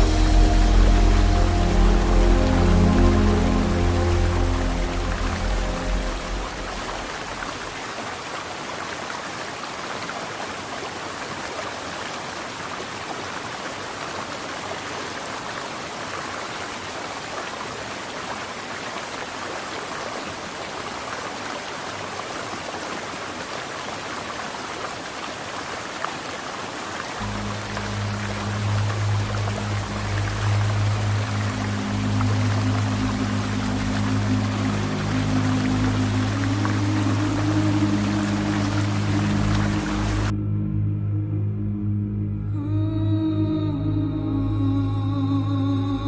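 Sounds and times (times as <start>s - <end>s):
background music: 0.0s - 7.4s, 27.2s - 46.0s
waterfall rushing: 0.0s - 40.3s.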